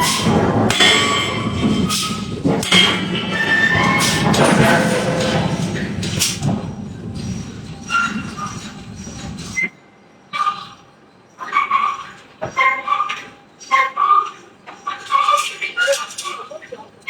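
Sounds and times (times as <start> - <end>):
heavy machinery rumble and clatter: 0.0 - 9.8, 11.8 - 17.0.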